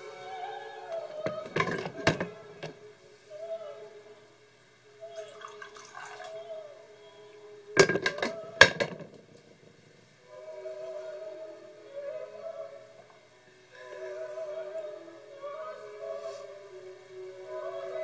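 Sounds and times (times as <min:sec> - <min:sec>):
soft music with held notes: 0:00.0 - 0:18.0
cups and dishes clattering: 0:01.2 - 0:02.8, 0:05.2 - 0:06.4, 0:07.8 - 0:09.2
liquid pouring: 0:05.1 - 0:06.5.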